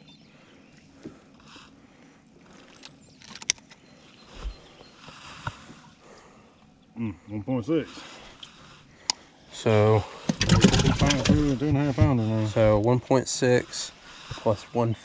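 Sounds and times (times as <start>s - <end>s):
handling clicks and knocks: 10.3s - 11.8s.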